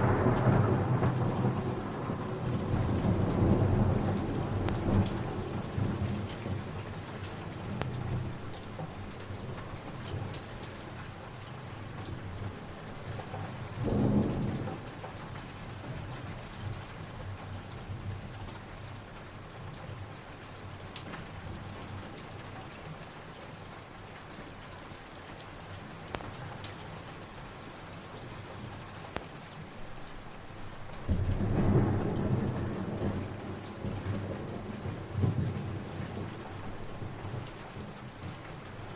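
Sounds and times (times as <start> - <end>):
thunder rumbling: 0.0 - 8.4, 13.6 - 15.0, 31.0 - 37.5
steady rain: 0.0 - 38.9.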